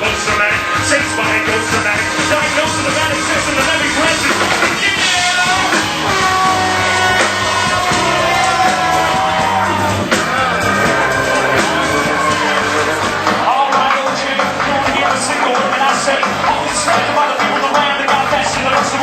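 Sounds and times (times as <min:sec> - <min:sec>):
live band music: 0:00.0 - 0:19.0
steady bass line: 0:00.0 - 0:19.0
person singing long sliding notes: 0:03.3 - 0:18.3.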